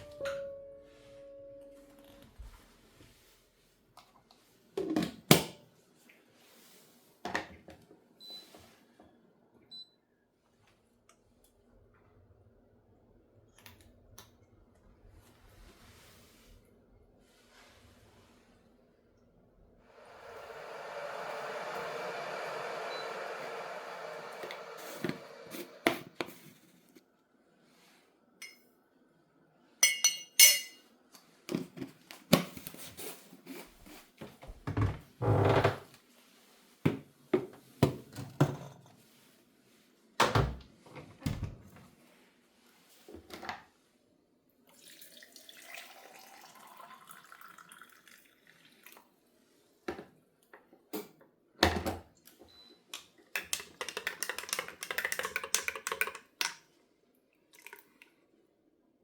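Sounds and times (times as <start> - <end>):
tap water running: 19.9 - 26.4, 44.8 - 49.0
dishes and utensils clinking: 29.8 - 30.9.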